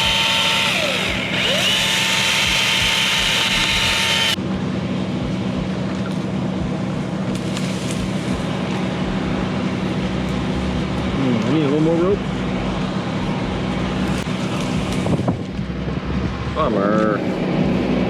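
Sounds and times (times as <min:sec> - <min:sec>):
electric chainsaw whine: 0:00.0 - 0:04.4
background hum: 0:00.0 - 0:18.0
traffic-like noise: 0:04.3 - 0:18.0.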